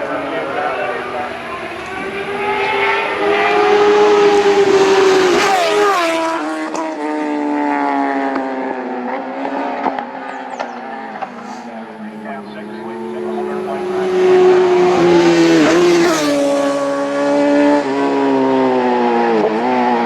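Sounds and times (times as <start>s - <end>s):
motorcycle passing at full throttle: 0.0s - 20.0s.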